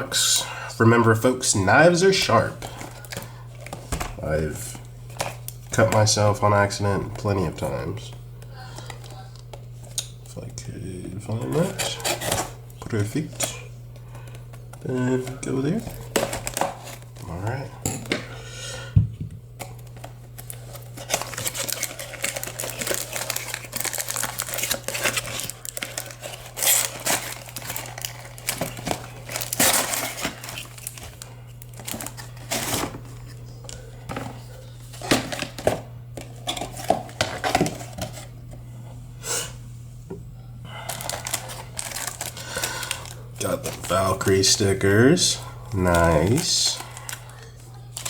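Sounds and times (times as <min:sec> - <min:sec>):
steady low hum: 0:00.0 - 0:48.0
packaging crinkling and rustling: 0:01.8 - 0:10.0, 0:11.4 - 0:17.6, 0:19.6 - 0:38.4, 0:40.8 - 0:48.0
packaging tearing: 0:19.6 - 0:33.0, 0:40.9 - 0:45.2, 0:45.8 - 0:48.0.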